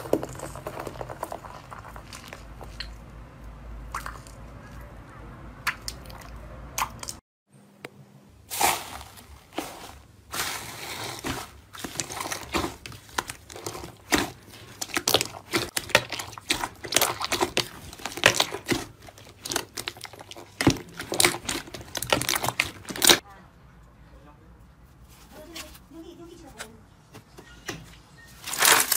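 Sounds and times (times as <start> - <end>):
crunchy slime crackling: 8.5 - 23.2.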